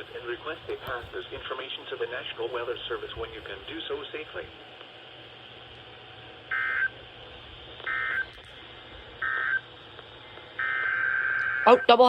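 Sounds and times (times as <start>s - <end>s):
digital data tone bursts: 6.5s - 7.0s, 7.8s - 8.3s, 9.2s - 9.7s, 10.6s - 12.0s.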